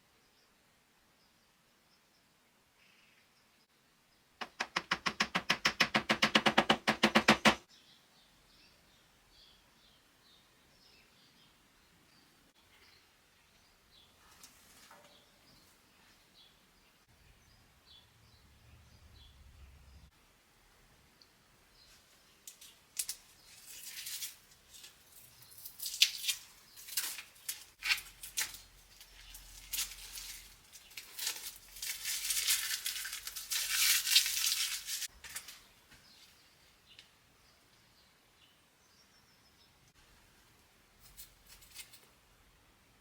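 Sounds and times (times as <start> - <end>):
scratchy scraping and rubbing: 23.4 - 35.6.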